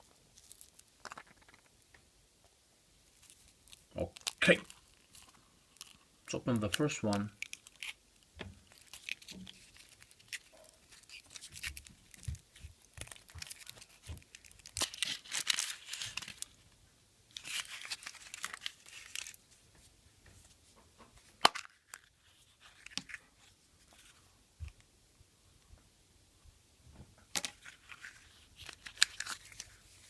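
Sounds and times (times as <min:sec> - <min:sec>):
small taps and handling: 0:08.3 - 0:14.9, 0:18.0 - 0:23.2, 0:26.9 - 0:29.8
foil wrapper rustling: 0:08.6 - 0:16.6, 0:17.3 - 0:19.4, 0:27.5 - 0:30.0.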